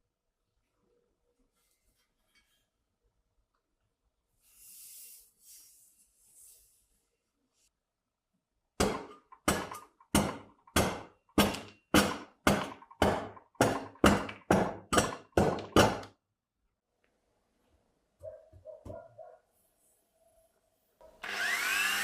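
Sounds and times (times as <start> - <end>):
hammer striking tool into metal: 8.8 - 16.1.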